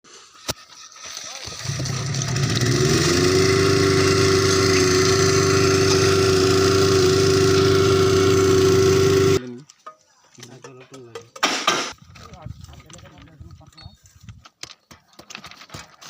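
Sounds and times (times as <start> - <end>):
small engine running: 1.2 - 9.4.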